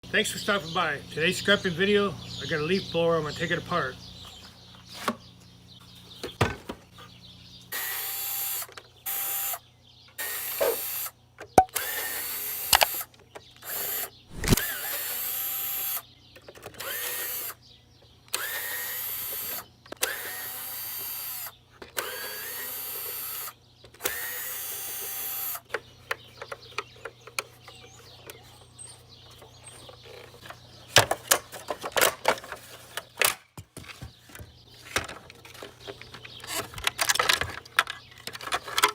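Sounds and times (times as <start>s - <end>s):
power drill whining: 7.7s - 9.6s, 10.2s - 13.0s, 13.6s - 16.0s, 16.8s - 17.6s, 18.3s - 25.7s
clicks and knocks of parts: 12.7s - 13.6s, 29.9s - 38.9s.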